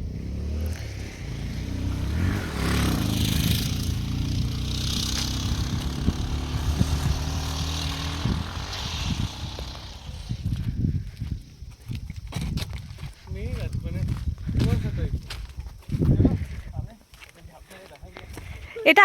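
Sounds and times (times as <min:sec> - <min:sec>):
vehicle engine running: 0:00.0 - 0:10.9.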